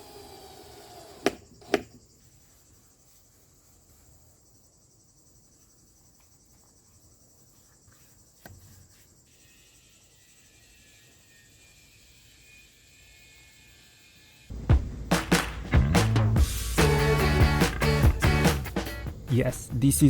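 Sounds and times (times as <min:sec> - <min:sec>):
crickets chirping: 0:00.0 - 0:15.1
sharp knocks: 0:14.5 - 0:16.6.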